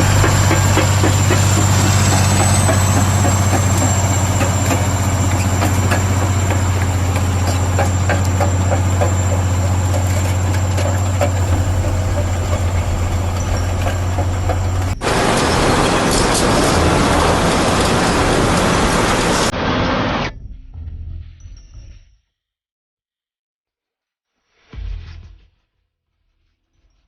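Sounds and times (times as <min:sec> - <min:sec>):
high whine: 0:00.0 - 0:08.7, 0:11.4 - 0:19.5
diesel engine drone: 0:00.0 - 0:19.5.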